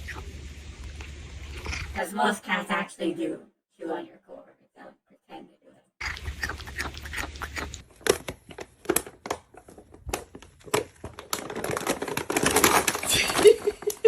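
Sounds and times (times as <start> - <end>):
clicking and crinkling: 6.0 - 14.0.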